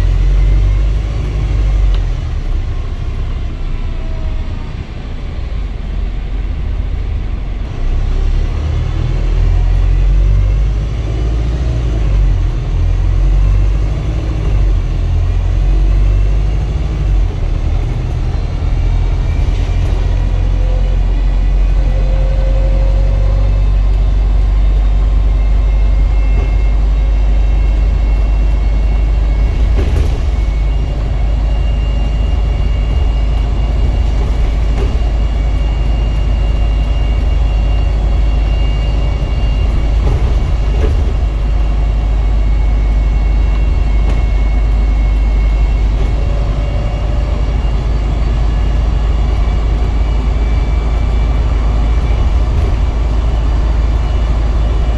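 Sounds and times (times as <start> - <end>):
bus engine low rumble: 0.0 - 54.9
thin whirring whines: 0.0 - 54.9.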